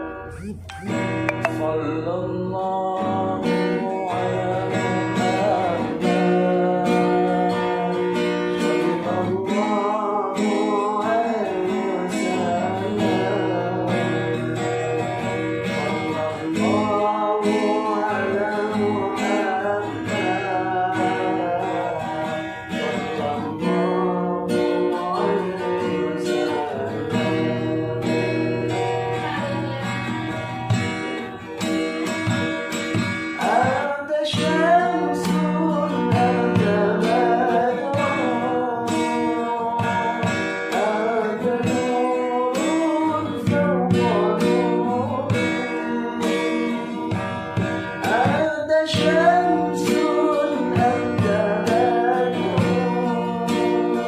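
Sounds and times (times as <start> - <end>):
person singing: 0.0 - 27.6, 28.7 - 31.4, 33.4 - 47.3, 48.0 - 54.0
acoustic guitar strumming chords: 0.0 - 54.0.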